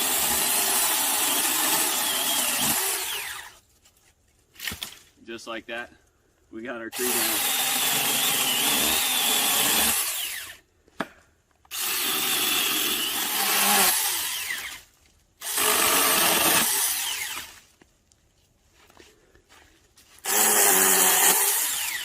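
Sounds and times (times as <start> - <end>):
mini chainsaw cutting wood: 0.0 - 3.6, 6.9 - 10.6, 11.7 - 17.6, 20.2 - 22.0.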